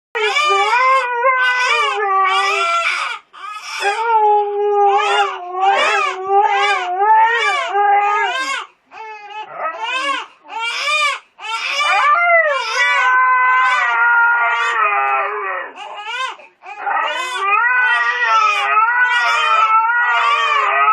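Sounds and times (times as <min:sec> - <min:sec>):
dog howling: 0:00.2 - 0:03.0, 0:03.8 - 0:08.5, 0:09.4 - 0:10.2, 0:11.7 - 0:16.0, 0:16.8 - 0:20.9
baby crying: 0:00.2 - 0:20.9.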